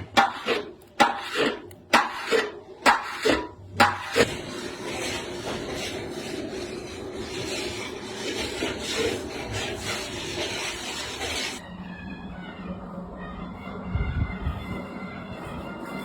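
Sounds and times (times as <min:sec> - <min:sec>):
spatula scraping a pan: 0:00.0 - 0:11.6
droning music: 0:11.6 - 0:16.0.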